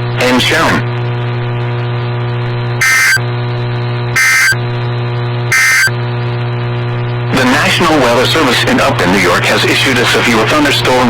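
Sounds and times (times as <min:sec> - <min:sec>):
electronic data chirps: 0:02.8 - 0:03.2, 0:04.2 - 0:04.6, 0:05.5 - 0:05.9
steady hum: 0:02.8 - 0:03.2, 0:04.2 - 0:04.6, 0:05.5 - 0:05.9.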